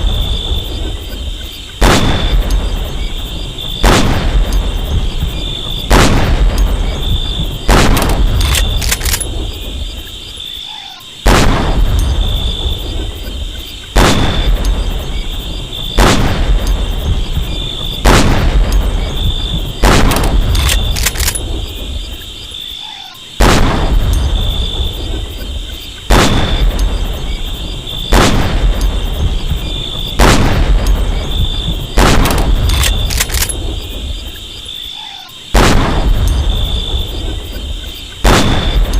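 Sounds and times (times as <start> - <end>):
rifle shots echoing: 1.8 - 9.8, 11.2 - 12.8, 14.0 - 15.2, 15.9 - 21.9, 23.4 - 24.4, 26.1 - 27.2, 28.0 - 34.1, 35.5 - 37.0, 38.2 - 38.9.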